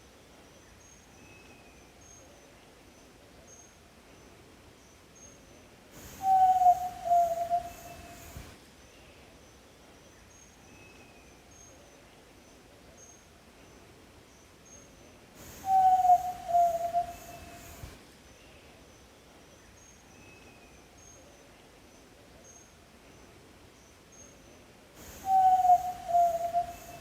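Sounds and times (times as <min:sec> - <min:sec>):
bird whistled call: 0:06.0 - 0:08.4, 0:15.4 - 0:17.9, 0:25.0 - 0:27.0
faint high chirps: 0:06.0 - 0:08.4, 0:14.6 - 0:18.5, 0:25.0 - 0:27.0.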